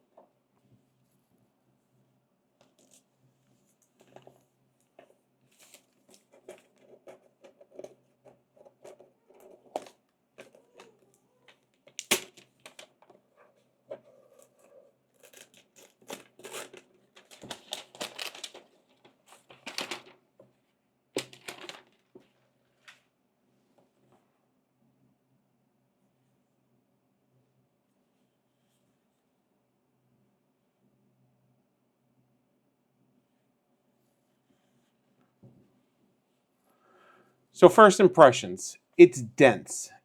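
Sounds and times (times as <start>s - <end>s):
cardboard and plastic rustling: 15.2s - 20.2s, 21.2s - 23.0s.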